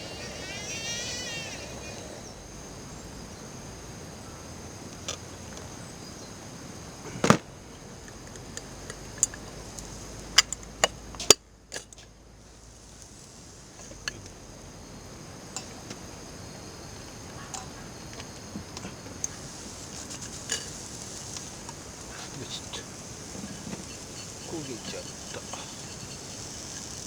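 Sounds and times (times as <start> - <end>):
high-pitched insect chorus: 0.0 - 7.3, 8.0 - 27.0.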